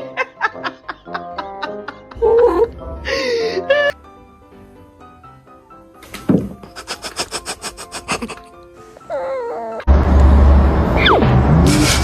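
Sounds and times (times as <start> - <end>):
background music: 0.0 - 9.9
dog whining: 9.0 - 9.9.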